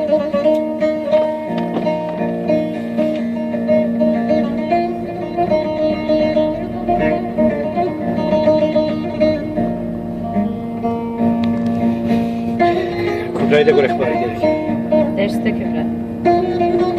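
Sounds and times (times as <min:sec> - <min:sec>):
plucked long-necked lute melody: 0:00.0 - 0:16.9.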